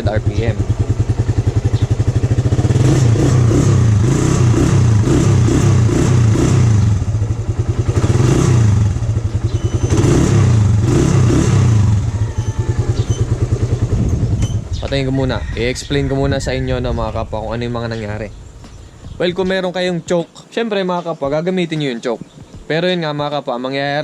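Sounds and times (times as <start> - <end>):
motorcycle engine idling: 0.0 - 16.2.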